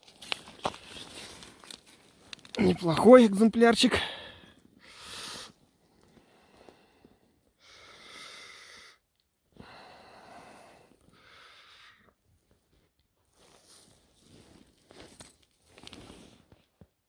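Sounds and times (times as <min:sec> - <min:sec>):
person breathing: 0:04.0 - 0:12.2.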